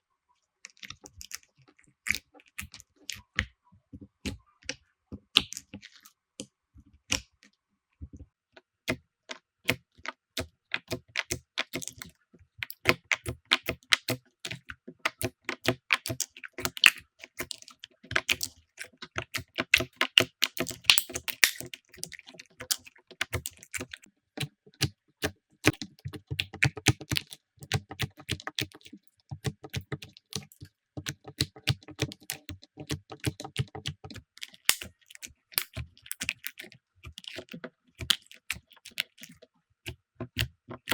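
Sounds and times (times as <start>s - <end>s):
slime squeezed crackling: 19.3s - 24.0s, 25.6s - 39.4s.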